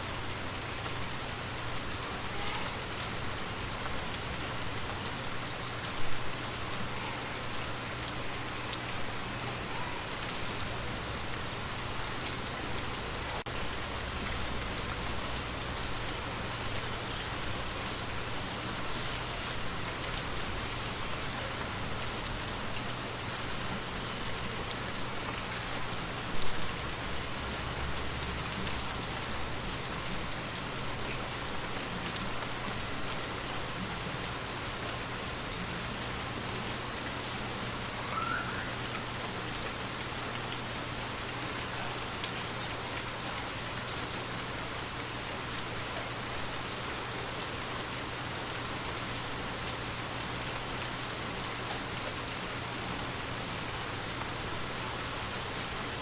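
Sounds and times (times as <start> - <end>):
rain pattering: 0.0 - 56.0.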